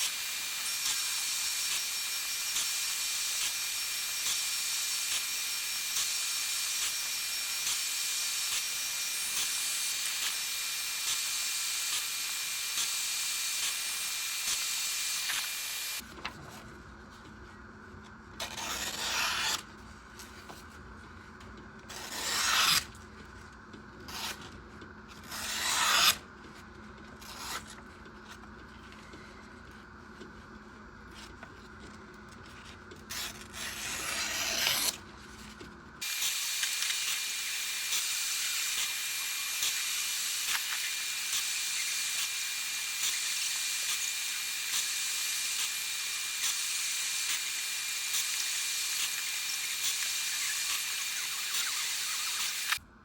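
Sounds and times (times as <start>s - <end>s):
knife blade rubbed on abrasive: 18.4s - 19.6s, 21.9s - 22.9s, 24.1s - 24.5s, 25.2s - 26.2s, 27.2s - 27.8s, 33.1s - 35.0s, 48.8s - 52.8s.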